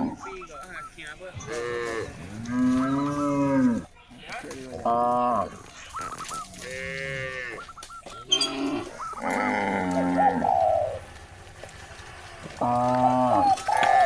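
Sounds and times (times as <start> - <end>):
cattle mooing: 1.4 - 3.9, 4.8 - 5.7, 6.5 - 7.6, 8.2 - 14.0.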